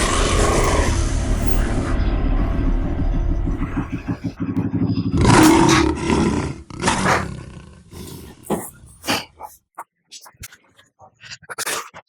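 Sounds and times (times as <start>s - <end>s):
motorcycle engine revving: 0.0s - 7.4s.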